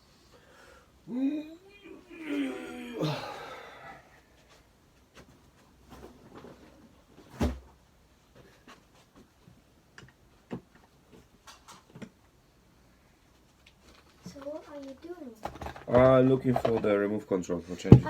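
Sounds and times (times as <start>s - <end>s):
objects knocking and clicking: 13.9s - 17.0s.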